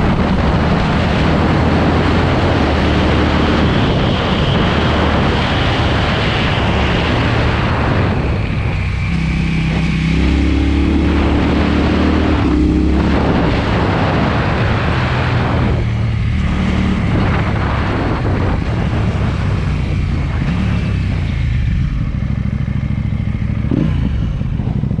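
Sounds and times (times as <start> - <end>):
motorcycle engine revving: 0.0 - 25.0
wind noise: 0.0 - 25.0.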